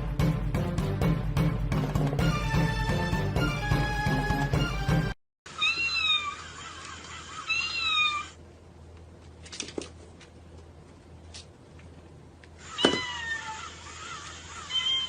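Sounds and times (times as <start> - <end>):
cat meowing: 5.6 - 6.8, 7.4 - 8.4, 12.7 - 15.0.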